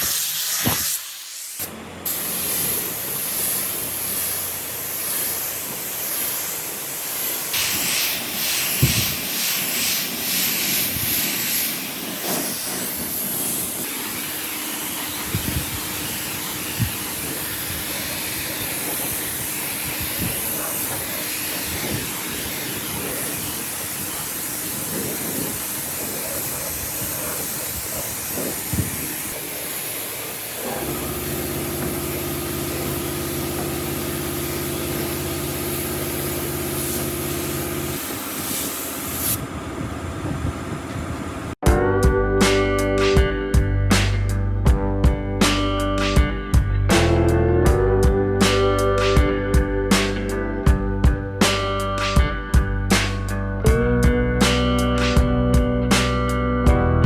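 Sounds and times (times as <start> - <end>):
steady hissing: 0.0 - 39.4, 48.4 - 50.8
electric motor humming: 12.3 - 38.2.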